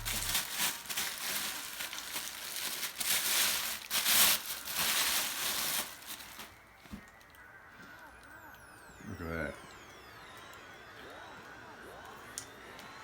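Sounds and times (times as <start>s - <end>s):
packing material crinkling: 0.0s - 7.4s.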